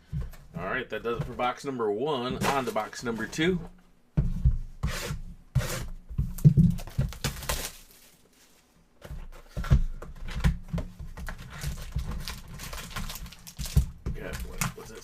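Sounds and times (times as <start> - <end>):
wrapper crinkling and rustling: 6.4 - 8.7, 11.2 - 15.0.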